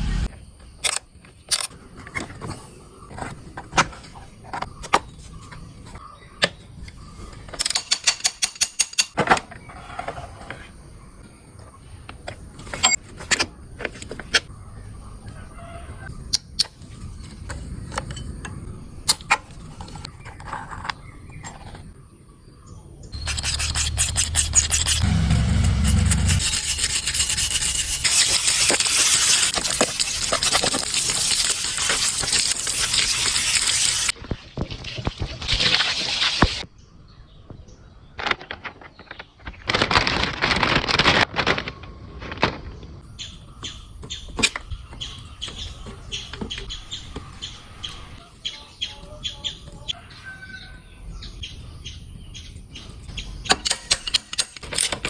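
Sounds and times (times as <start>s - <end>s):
loud scraping rub: 0.0s - 0.3s, 23.2s - 34.1s
tool clicks and knocks: 7.5s - 9.2s.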